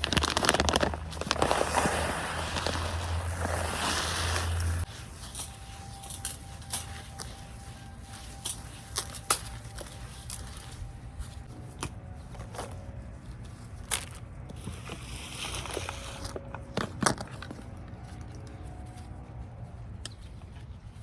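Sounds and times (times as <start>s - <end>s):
plastic bags crinkling: 0.0s - 10.8s
footsteps: 0.3s - 14.8s.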